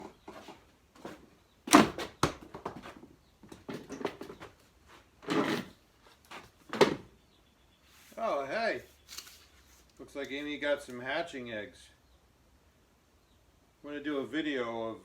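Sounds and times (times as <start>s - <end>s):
rustling and scraping: 0.0s - 7.1s, 7.8s - 10.5s.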